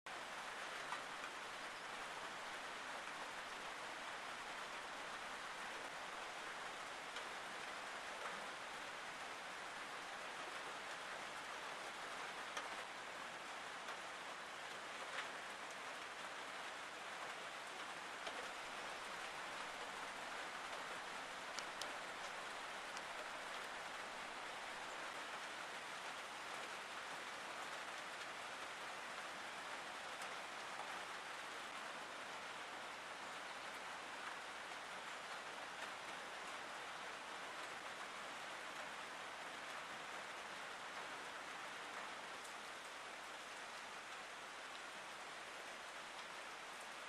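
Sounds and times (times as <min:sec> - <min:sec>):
steady rainfall: 0:00.1 - 0:47.0
single raindrops ticking: 0:13.8 - 0:31.9.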